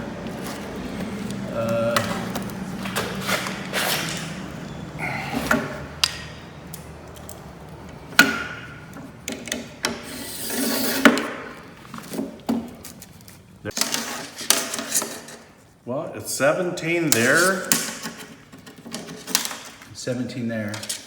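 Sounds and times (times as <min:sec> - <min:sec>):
scraping and rustling: 0:00.0 - 0:15.8
tools clicking and knocking: 0:05.3 - 0:10.1, 0:17.1 - 0:19.9.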